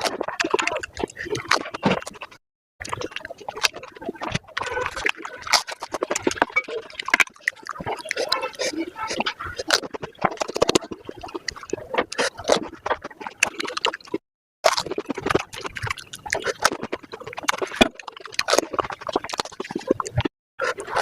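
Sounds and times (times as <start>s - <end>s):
wet slurping and gulping: 0.0s - 21.0s
crunching of crisp shells: 9.6s - 20.3s.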